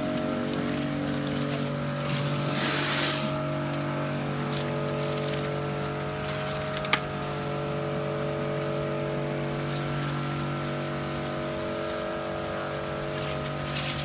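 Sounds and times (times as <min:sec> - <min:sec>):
pressure washer motor hum: 0:00.0 - 0:14.0
water jet spraying onto paving: 0:02.0 - 0:03.6.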